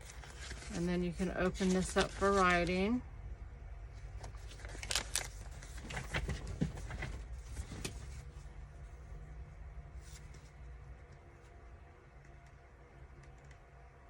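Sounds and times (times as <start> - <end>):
paper rustling and crinkling: 0.0 - 3.0, 4.1 - 8.4.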